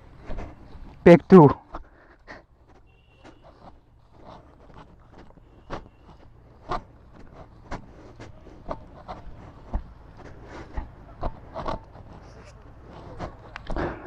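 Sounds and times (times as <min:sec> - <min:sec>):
slow footsteps: 0:00.0 - 0:14.0.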